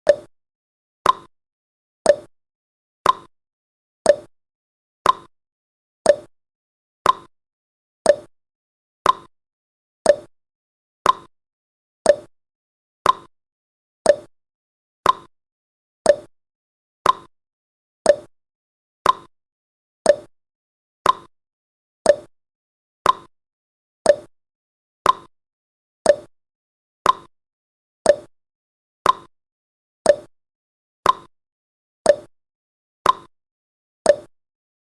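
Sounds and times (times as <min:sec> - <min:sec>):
timer ticking: 0:00.0 - 0:00.3, 0:01.0 - 0:01.3, 0:02.1 - 0:02.3, 0:03.0 - 0:03.3, 0:04.1 - 0:04.3, 0:05.0 - 0:05.3, 0:06.1 - 0:06.3, 0:07.0 - 0:07.3, 0:08.1 - 0:08.3, 0:09.0 - 0:09.3, 0:10.0 - 0:10.3, 0:11.0 - 0:11.3, 0:12.0 - 0:12.3, 0:13.0 - 0:13.3, 0:14.0 - 0:14.3, 0:15.0 - 0:15.3, 0:16.1 - 0:16.3, 0:17.0 - 0:17.3, 0:18.1 - 0:18.3, 0:19.0 - 0:19.3, 0:20.1 - 0:20.3, 0:21.0 - 0:21.3, 0:22.1 - 0:22.3, 0:23.0 - 0:23.3, 0:24.1 - 0:24.3, 0:25.0 - 0:25.3, 0:26.0 - 0:26.3, 0:27.0 - 0:27.3, 0:28.1 - 0:28.3, 0:29.0 - 0:29.3, 0:30.1 - 0:30.3, 0:31.0 - 0:31.3, 0:32.1 - 0:32.3, 0:33.0 - 0:33.3, 0:34.1 - 0:34.3.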